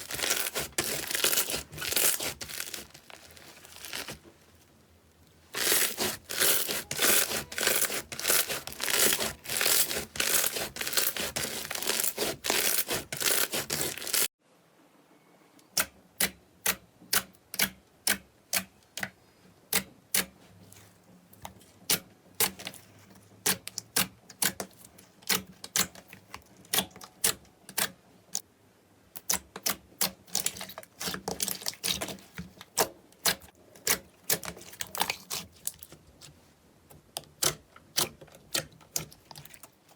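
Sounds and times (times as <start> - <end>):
slime crackling when squeezed: 0.0 - 4.2, 5.6 - 14.3.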